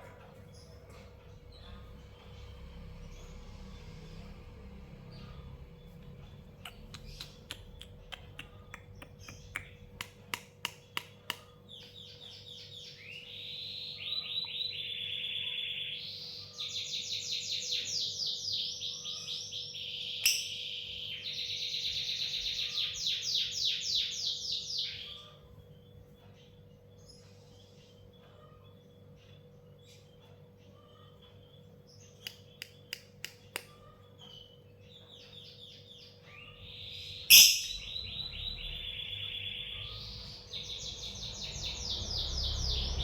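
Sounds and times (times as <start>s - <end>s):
lovebird chirping rapidly: 37.3s - 40.0s.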